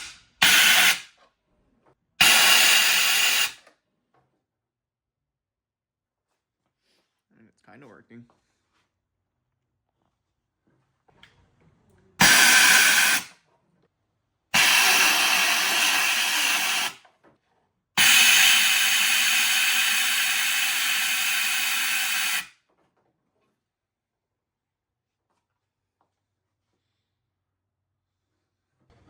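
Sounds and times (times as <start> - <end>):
compressed air blow gun hissing: 0.0 - 1.0, 2.2 - 3.6, 12.2 - 13.3, 14.6 - 17.0, 18.0 - 22.5.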